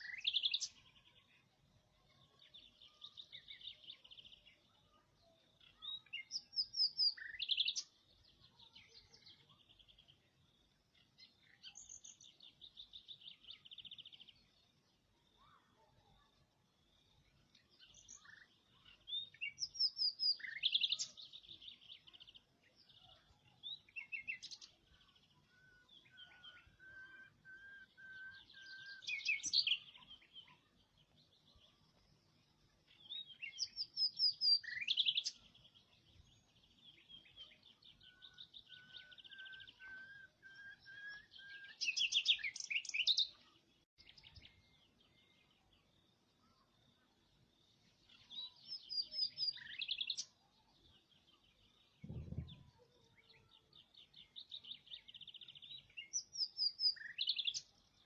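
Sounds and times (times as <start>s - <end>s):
songbirds chirping and trilling: 0.0s - 58.0s
bird repeated whistled notes: 38.1s - 43.0s.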